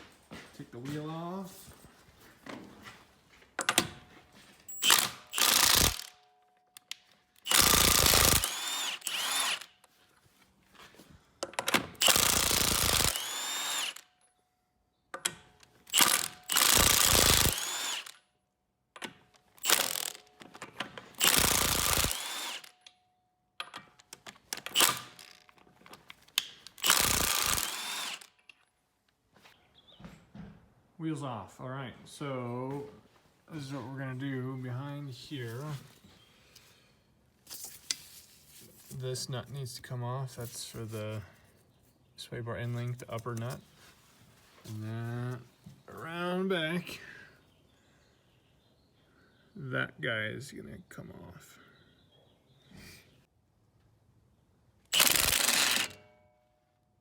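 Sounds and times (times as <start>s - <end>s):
impact wrench whining: 4.7s - 9.8s, 11.4s - 14.2s, 15.2s - 18.2s, 19.0s - 22.9s, 23.8s - 28.5s, 54.9s - 56.2s.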